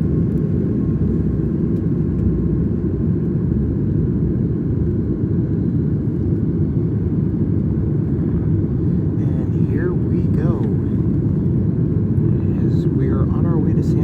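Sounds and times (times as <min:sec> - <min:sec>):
airplane cabin engine rumble: 0:00.0 - 0:14.0.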